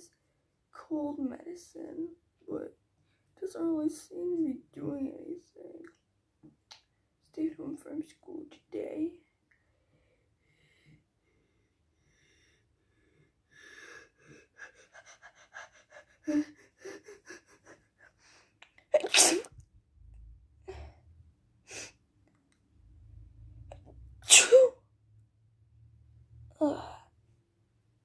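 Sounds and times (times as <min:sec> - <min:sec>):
person sneezing: 0:19.0 - 0:19.5, 0:24.2 - 0:24.8.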